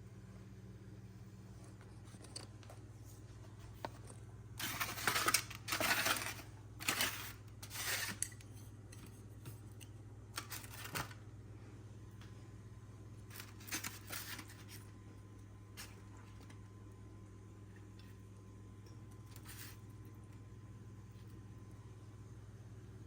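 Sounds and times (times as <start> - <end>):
steady low hum: 0.0 - 23.0
objects scraping and rustling: 1.5 - 9.8, 10.4 - 11.2, 13.3 - 15.0, 19.2 - 19.9.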